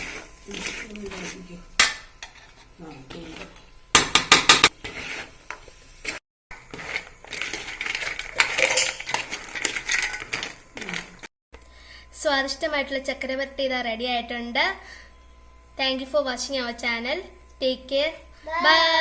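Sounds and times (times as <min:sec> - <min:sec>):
metal spoon scraping a pan: 0:00.0 - 0:11.3.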